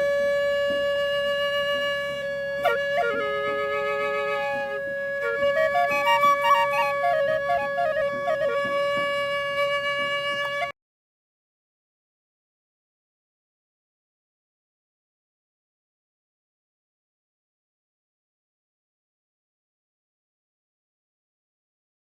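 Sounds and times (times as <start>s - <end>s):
flute-like melody: 0.0s - 10.8s
wind instrument drone: 0.0s - 10.8s.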